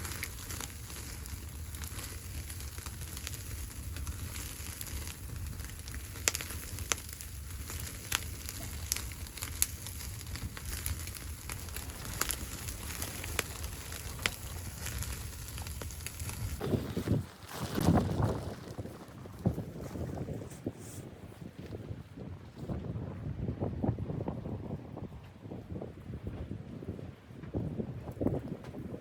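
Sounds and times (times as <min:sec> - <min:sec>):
wood fire crackling: 0:00.0 - 0:20.6.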